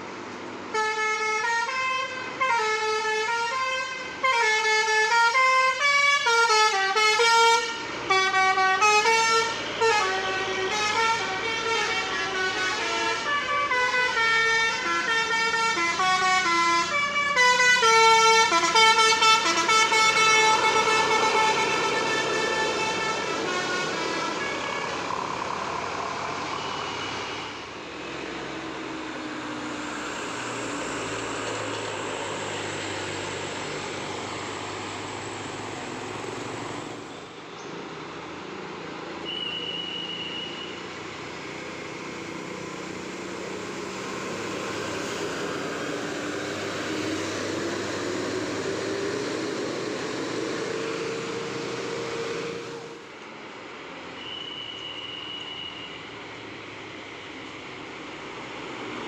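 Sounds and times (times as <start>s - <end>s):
vehicle engines with road noise: 0.0s - 59.0s
engine revving up: 20.3s - 37.1s, 41.4s - 53.0s.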